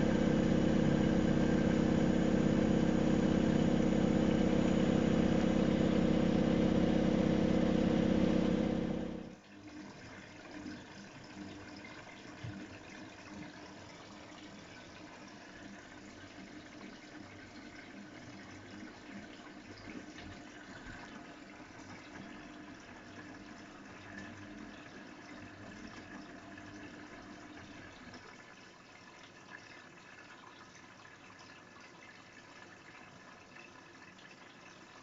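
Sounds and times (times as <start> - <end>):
steady hum: 0.0 - 9.4
water splashing inside machine: 0.0 - 29.3
washing machine running: 0.0 - 30.4.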